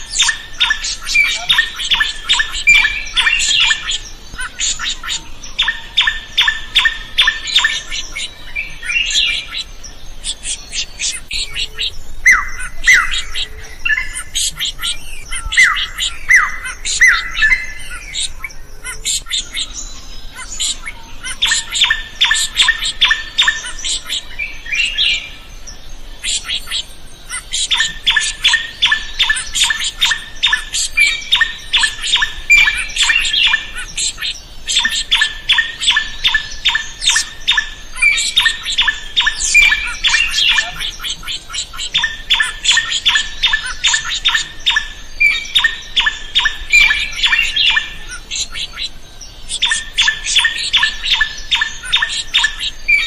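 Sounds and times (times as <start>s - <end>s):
bird calling sharp repeated notes: 26.2s - 53.0s.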